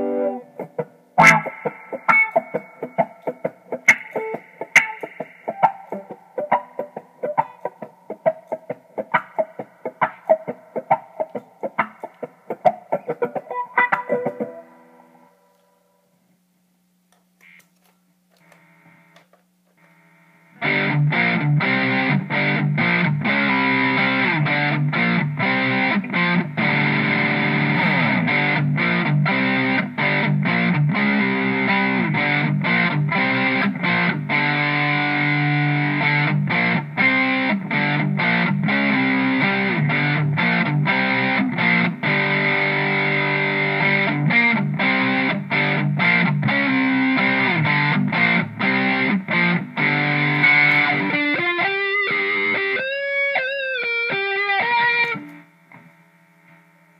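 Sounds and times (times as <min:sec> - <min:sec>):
distorted electric guitar riffs: 0:00.0 - 0:15.9, 0:19.8 - 0:56.9.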